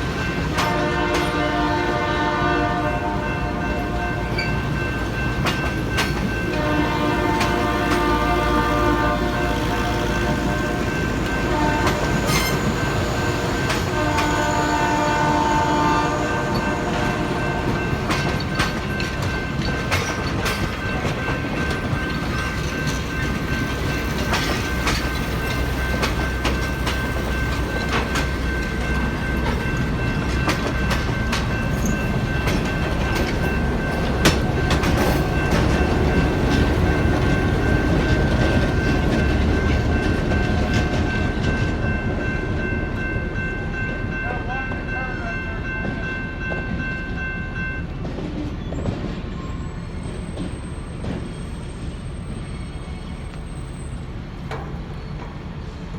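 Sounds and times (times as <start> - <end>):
rumble of moving train: 0.0 - 55.9
train horn blasts: 0.4 - 4.4, 6.5 - 18.1
wheels clicking over rail joints: 16.5 - 41.8.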